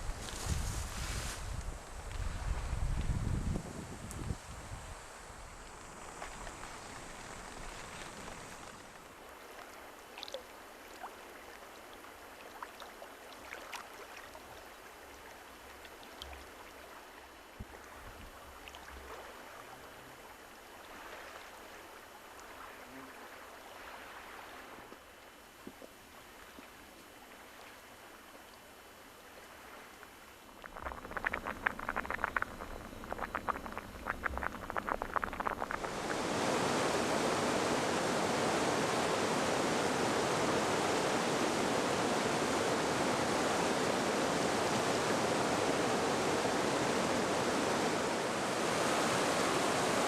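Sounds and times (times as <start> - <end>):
small splashes: 9.4 - 14.7, 30.5 - 36.3
river water rushing: 30.7 - 50.0.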